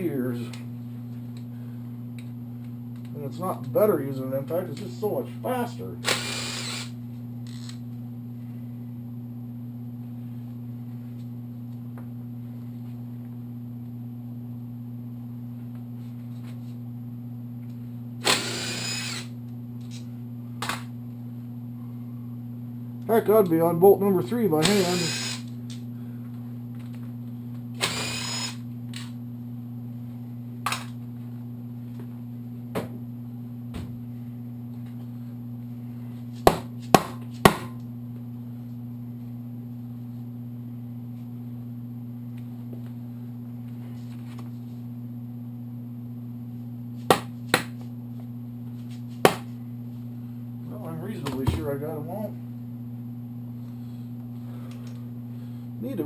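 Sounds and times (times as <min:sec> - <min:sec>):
steady low hum: 0:00.0 - 0:56.0
impact driver whirring: 0:06.0 - 0:07.8, 0:18.2 - 0:20.0, 0:24.6 - 0:25.6, 0:27.8 - 0:28.6.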